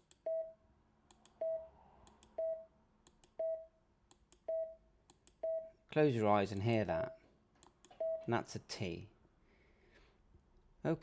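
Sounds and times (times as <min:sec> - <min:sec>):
morse code beeps: 0:00.2 - 0:00.6, 0:01.4 - 0:01.7, 0:02.4 - 0:02.7, 0:04.5 - 0:04.8, 0:07.9 - 0:08.3.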